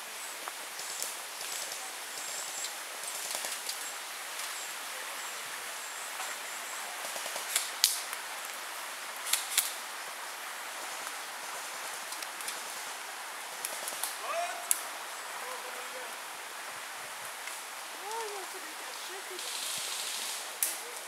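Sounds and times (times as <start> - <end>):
steady background hiss: 0.0 - 21.0.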